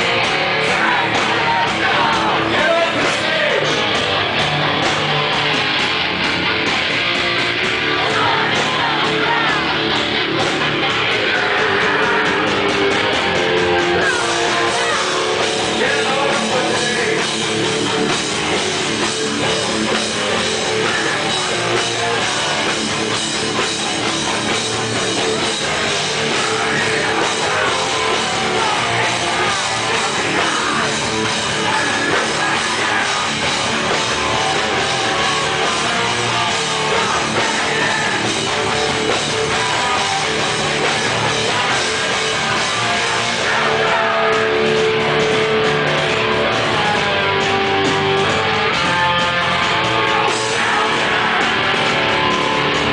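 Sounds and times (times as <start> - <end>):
distorted electric guitars: 0.0 - 52.9
drum kit: 0.0 - 52.9.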